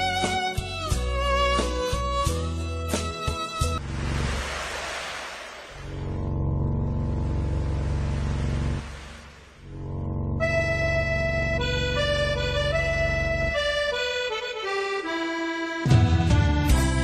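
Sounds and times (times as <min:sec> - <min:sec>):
slow instrumental melody: 0:00.0 - 0:03.8, 0:10.2 - 0:17.0.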